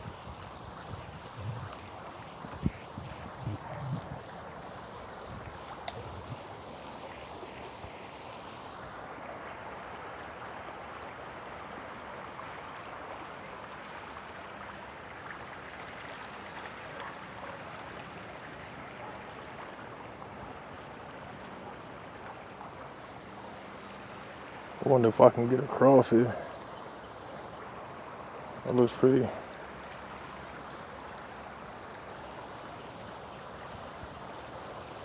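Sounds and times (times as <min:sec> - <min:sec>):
creek water rushing: 0:00.0 - 0:35.0.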